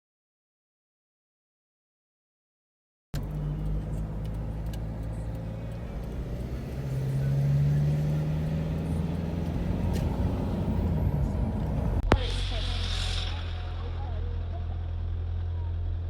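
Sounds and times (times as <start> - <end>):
car engine hum: 3.2 - 16.0
road noise: 3.2 - 16.0.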